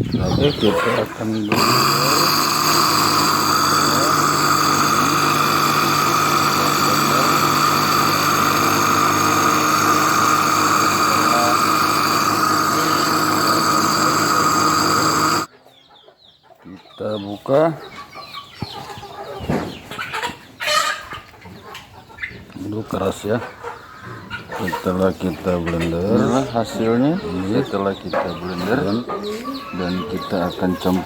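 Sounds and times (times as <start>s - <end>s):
blender motor running: 1.4s - 15.5s.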